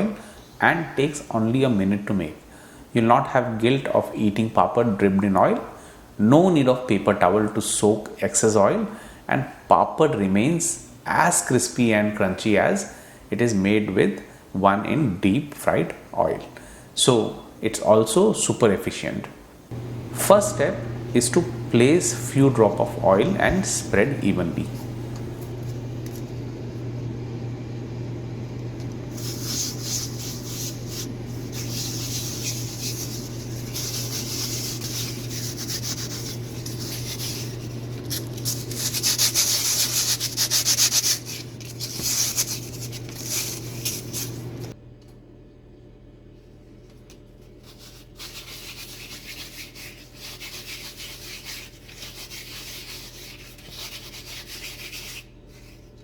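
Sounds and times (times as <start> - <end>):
low hum: 19.7 - 40.0
hand rubbing oil on papad: 29.1 - 44.8.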